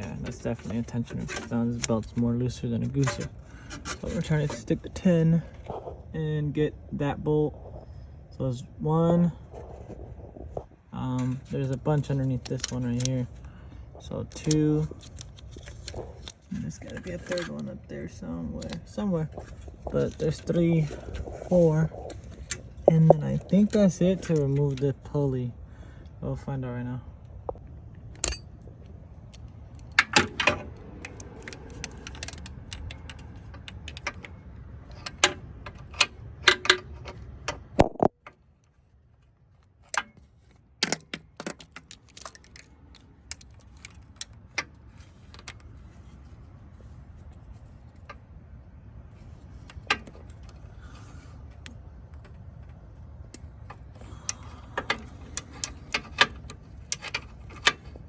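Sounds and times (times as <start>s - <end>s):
metal tools clinking: 28.2s - 30.3s.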